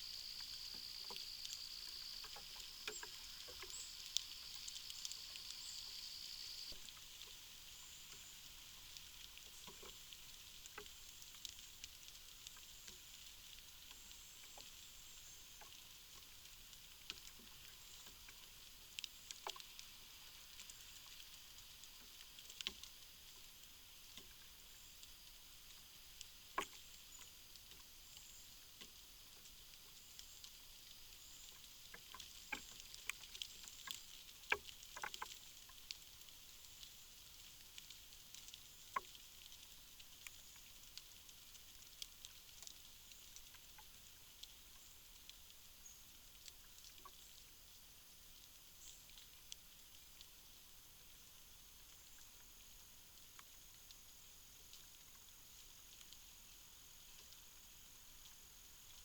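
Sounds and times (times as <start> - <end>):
soft ticks and clicks: 0.0 - 59.0.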